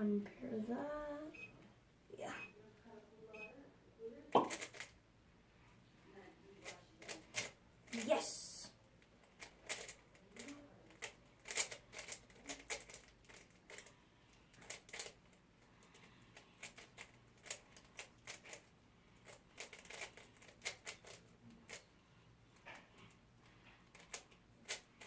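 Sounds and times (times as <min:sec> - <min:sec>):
puzzle cube plastic clicks: 0:04.4 - 0:04.9, 0:06.6 - 0:08.0, 0:09.0 - 0:13.9, 0:14.5 - 0:21.9, 0:23.8 - 0:25.0.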